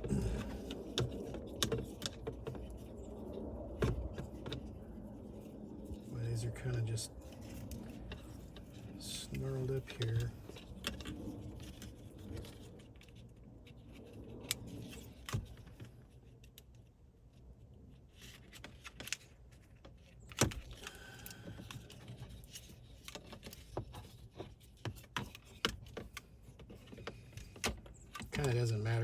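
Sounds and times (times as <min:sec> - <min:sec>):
faint low hum: 0:00.0 - 0:18.4.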